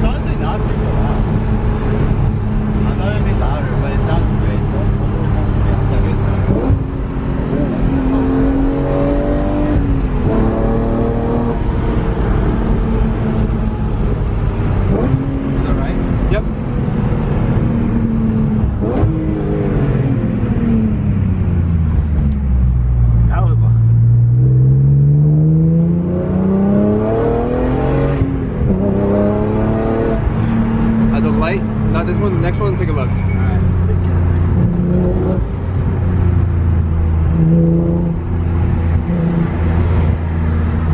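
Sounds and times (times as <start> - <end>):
car engine with loud exhaust: 0.0 - 40.9.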